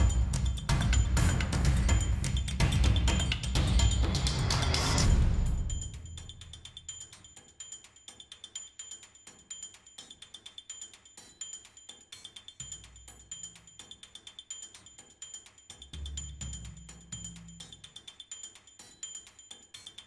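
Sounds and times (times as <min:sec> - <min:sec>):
fast ringing ticks: 0:05.6 - 0:20.0.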